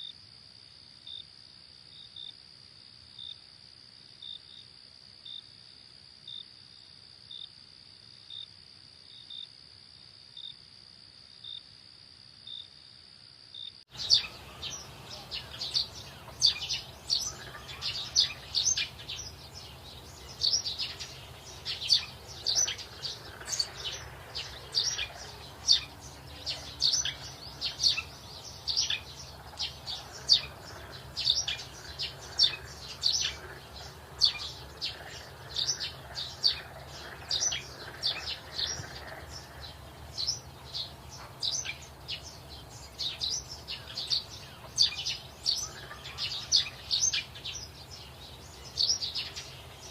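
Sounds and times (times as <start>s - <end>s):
birds chirping: 13.9s - 49.9s.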